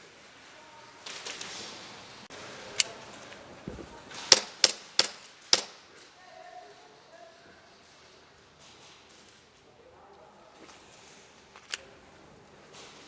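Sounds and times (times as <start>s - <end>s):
airsoft gun shots: 4.3s - 5.8s.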